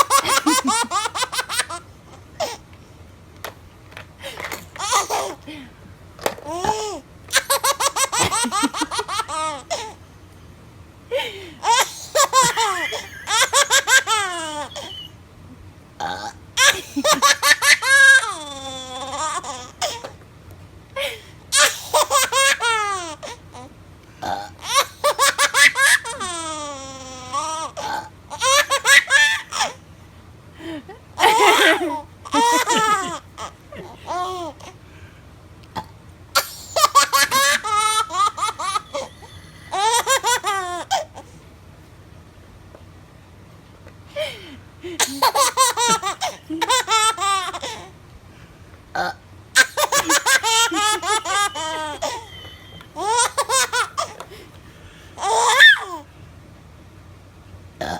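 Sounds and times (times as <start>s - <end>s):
baby laughing and squealing: 0.0s - 1.8s, 4.8s - 5.4s, 6.4s - 10.0s, 11.6s - 15.2s, 16.6s - 20.0s, 24.6s - 29.8s, 31.2s - 34.7s, 36.4s - 41.3s, 49.6s - 54.2s, 55.2s - 56.1s
woman burping: 16.0s - 16.4s, 31.2s - 32.0s, 49.0s - 49.2s.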